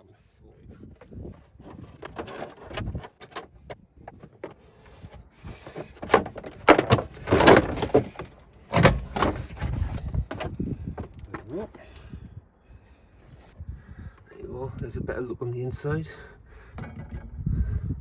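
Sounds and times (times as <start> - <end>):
rustling: 1.0 - 12.0.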